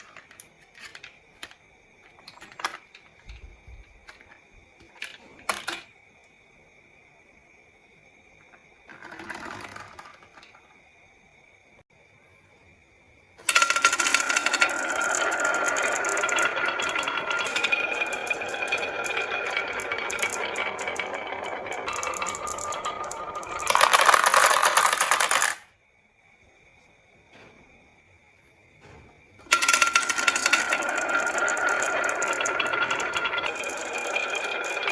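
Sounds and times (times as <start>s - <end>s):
marbles rattling down a track: 13.4s - 25.6s, 29.4s - 34.9s.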